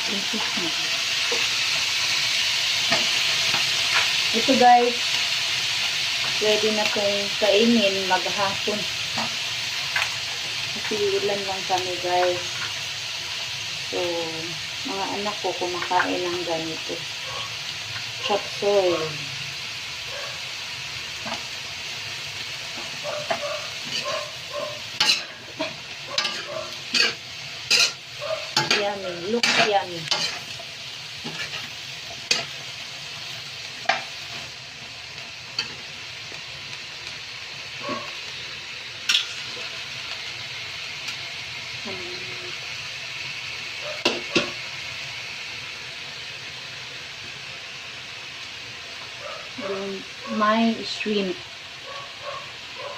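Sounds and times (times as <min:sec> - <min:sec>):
food sizzling in a frying pan: 0:00.0 - 0:52.9
spatula scraping and clinking: 0:23.1 - 0:30.4.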